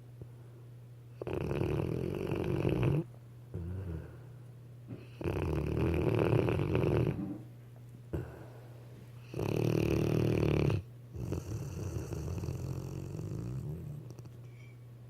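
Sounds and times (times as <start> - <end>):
dog snoring: 1.1 - 4.3, 4.9 - 7.5, 8.1 - 8.5, 9.2 - 14.4.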